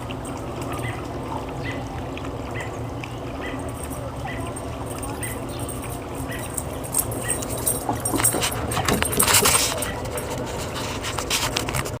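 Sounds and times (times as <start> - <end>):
low background hum: 0.0 - 12.0
dog making small sounds: 0.6 - 10.8
clicks and rustling: 4.9 - 12.0.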